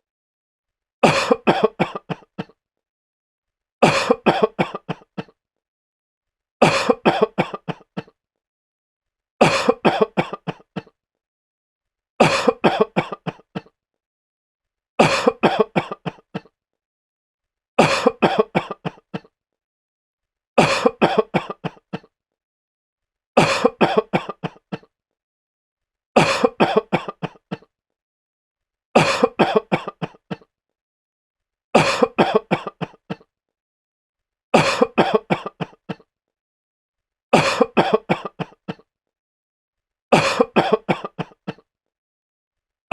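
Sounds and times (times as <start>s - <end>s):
man coughing: 1.0s - 2.5s, 3.8s - 5.3s, 6.6s - 8.1s, 9.4s - 10.9s, 12.2s - 13.7s, 15.0s - 16.5s, 17.8s - 19.3s, 20.6s - 22.1s, 23.4s - 24.9s, 26.2s - 27.7s, 29.0s - 30.5s, 31.8s - 33.2s, 34.6s - 36.0s, 37.4s - 38.8s, 40.1s - 41.6s.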